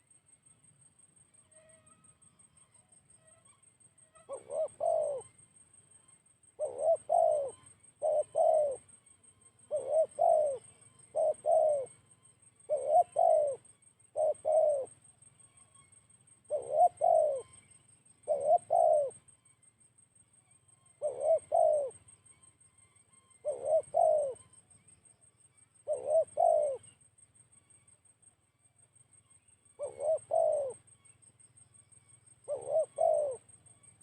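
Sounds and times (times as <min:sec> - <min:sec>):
dove cooing: 0:04.3 - 0:05.4, 0:06.6 - 0:08.9, 0:09.6 - 0:15.0, 0:16.5 - 0:19.2, 0:21.0 - 0:22.0, 0:23.4 - 0:24.4, 0:25.8 - 0:27.0, 0:29.8 - 0:30.8, 0:32.4 - 0:33.4.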